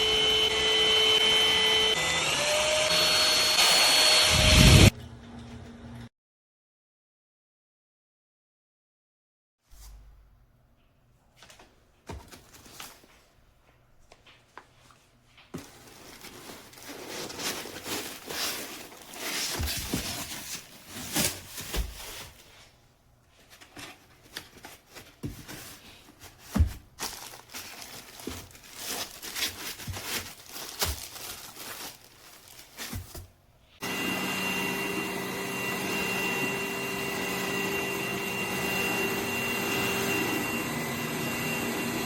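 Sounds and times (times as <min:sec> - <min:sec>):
plastic wrapping crinkling: 0:14.2 - 0:33.4.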